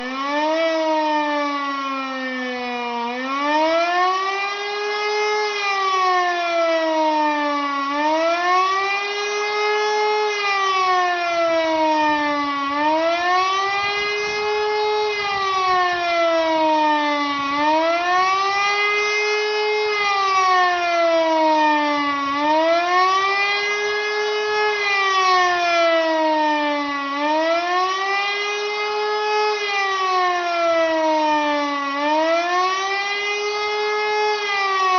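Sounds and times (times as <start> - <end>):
wailing siren: 0.0 - 34.9.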